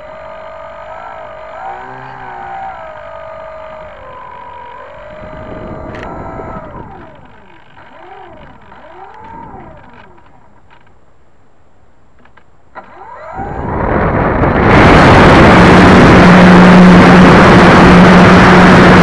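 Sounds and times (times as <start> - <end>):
electric motor and propeller whining: 0.0 - 11.0, 12.2 - 19.0
wind noise: 1.8 - 10.7, 13.0 - 19.0.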